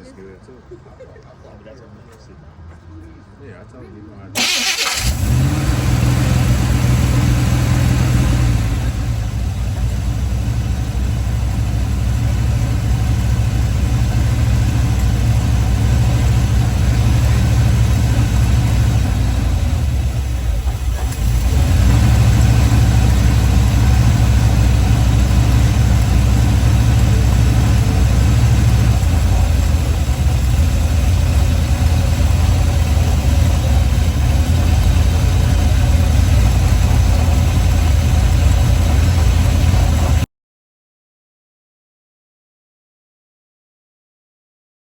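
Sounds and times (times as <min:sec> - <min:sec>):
engine idling with low rumble: 0:04.4 - 0:40.3.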